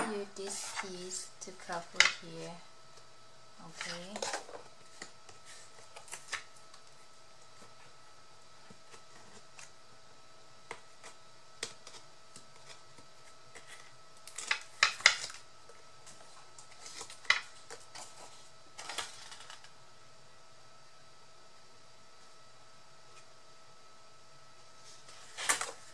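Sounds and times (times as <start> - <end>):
paper rustling and crackling: 3.7 - 7.9, 16.0 - 19.7, 24.8 - 25.9.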